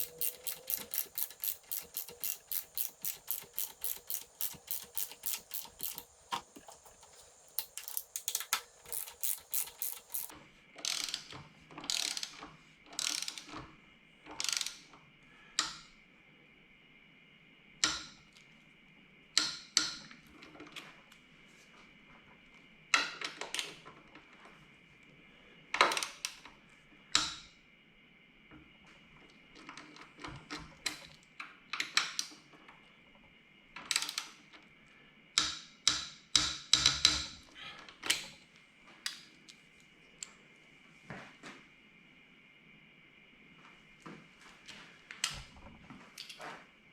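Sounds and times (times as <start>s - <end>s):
ratchet wrench clicking: 0.0s - 10.3s.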